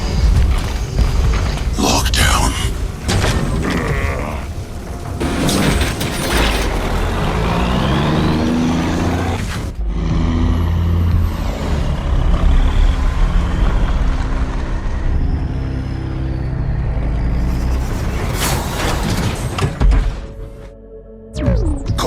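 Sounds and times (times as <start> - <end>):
heavy truck engine running: 2.7 - 19.7.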